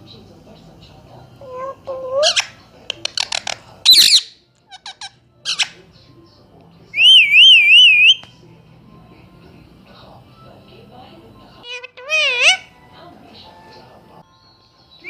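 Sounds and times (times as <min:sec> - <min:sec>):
parrot squawks and chirps: 0:01.4 - 0:05.8, 0:07.0 - 0:08.2, 0:11.6 - 0:12.8
parrot wavering whistle: 0:07.0 - 0:08.2.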